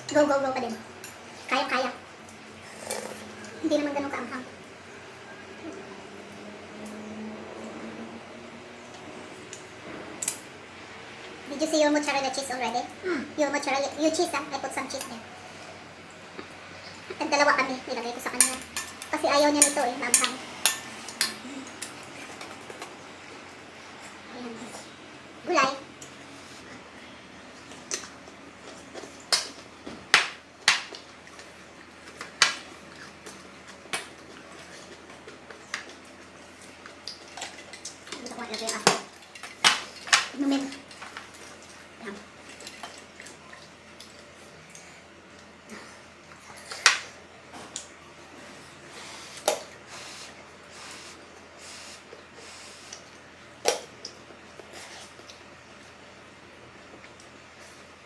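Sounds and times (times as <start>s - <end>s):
slurping noodles: 2.6s - 3.4s
utensils clinking against dishes: 18.3s - 22.8s.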